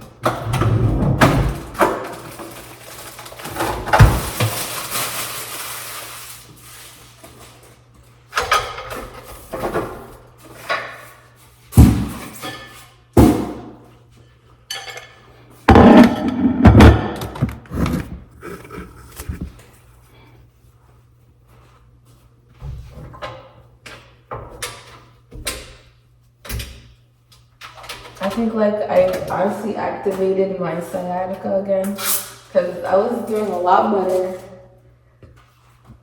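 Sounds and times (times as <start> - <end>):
knocks in echoing room: 11.8 - 12.3, 13.2 - 13.9, 15.7 - 17.7
rustling and scraping: 15.7 - 20.0.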